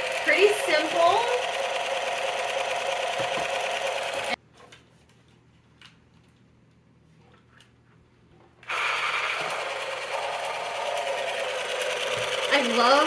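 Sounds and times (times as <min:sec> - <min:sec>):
toy truck motor whirring: 0:00.0 - 0:04.4, 0:08.6 - 0:13.0.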